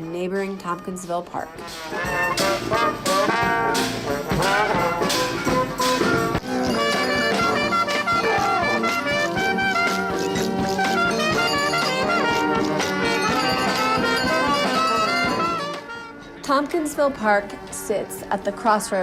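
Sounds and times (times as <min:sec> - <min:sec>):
brass band playing: 0:01.4 - 0:16.3
drum hits: 0:01.7 - 0:15.8.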